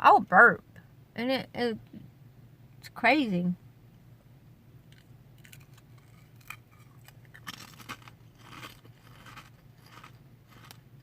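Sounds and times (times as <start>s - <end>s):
potato crisps being chewed: 4.9s - 11.0s.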